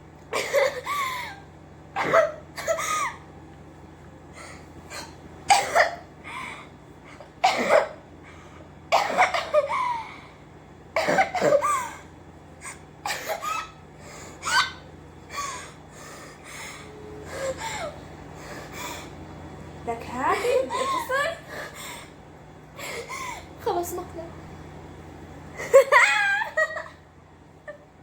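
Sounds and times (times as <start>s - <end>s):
girl coughing harshly: 0.3s - 1.4s, 2.0s - 3.2s, 4.9s - 6.1s, 7.4s - 8.0s, 8.9s - 10.1s, 11.0s - 12.1s, 13.0s - 13.8s.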